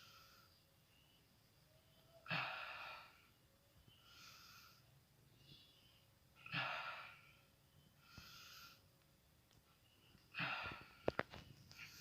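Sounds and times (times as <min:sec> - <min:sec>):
person breathing deeply: 0:02.1 - 0:08.9, 0:09.9 - 0:12.0.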